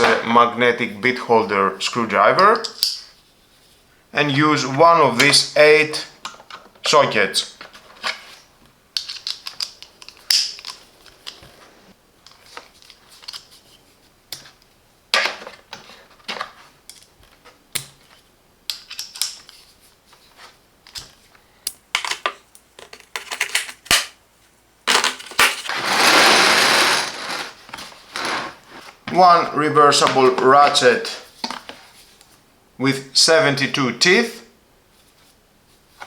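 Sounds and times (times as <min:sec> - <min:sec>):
metal tools scraping: 0:25.7 - 0:28.8.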